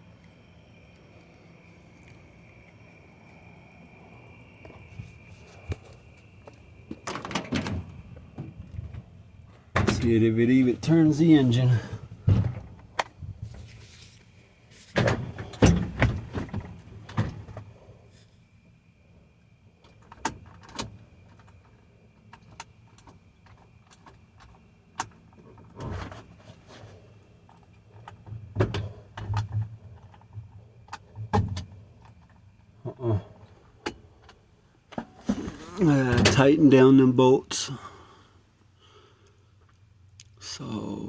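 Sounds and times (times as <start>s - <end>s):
faint low hum: 0.0s - 41.0s
knocks and clunks: 6.9s - 11.1s, 11.7s - 13.6s, 14.8s - 17.7s, 28.0s - 32.2s, 34.9s - 36.5s.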